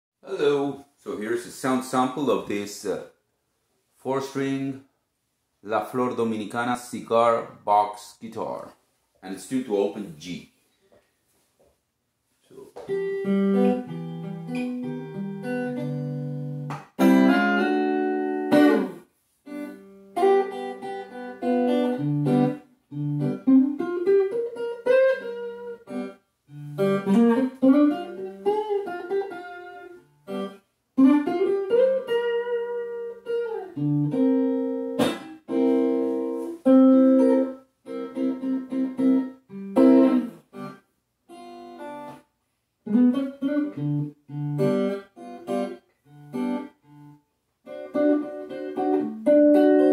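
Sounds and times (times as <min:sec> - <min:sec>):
cigar box guitar plucked: 0:12.8 - 0:42.2, 0:42.8 - 0:49.9.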